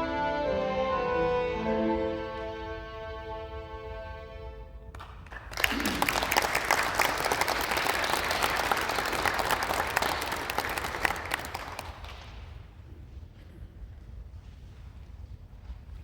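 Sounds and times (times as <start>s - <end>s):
audience applauding: 5.0s - 12.5s.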